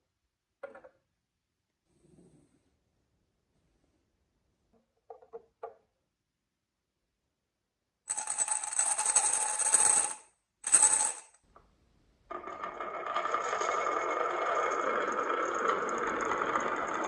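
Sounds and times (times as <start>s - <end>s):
marbles clattering on a track: 8.1s - 11.3s, 12.3s - 17.0s.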